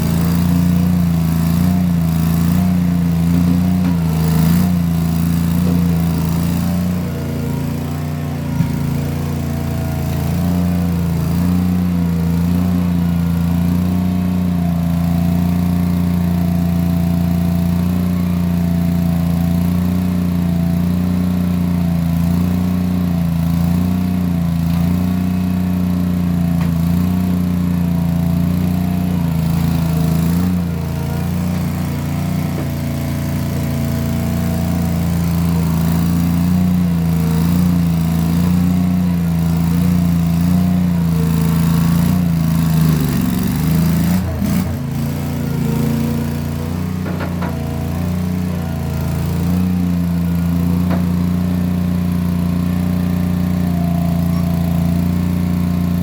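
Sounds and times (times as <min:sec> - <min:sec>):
skid steer engine running: 0:00.0 - 0:56.0.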